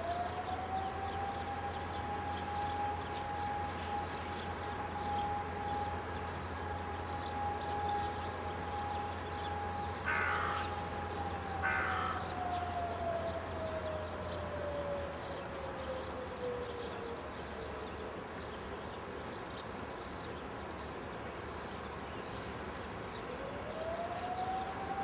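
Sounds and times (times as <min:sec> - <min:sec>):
mechanical siren tone: 0:00.0 - 0:17.1, 0:23.3 - 0:25.0.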